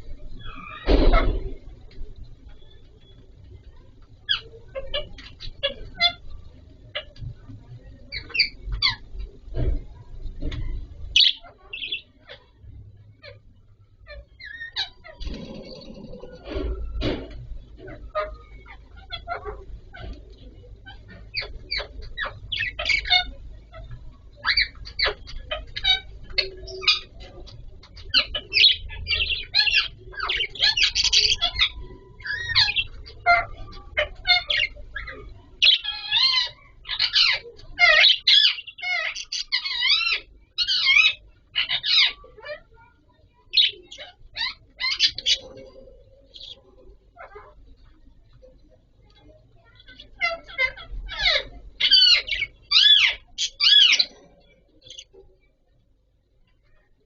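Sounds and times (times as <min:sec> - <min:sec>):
budgerigars chirping: 0:11.2 - 0:12.5, 0:17.9 - 0:42.6, 0:43.5 - 0:47.6, 0:49.8 - 0:55.2.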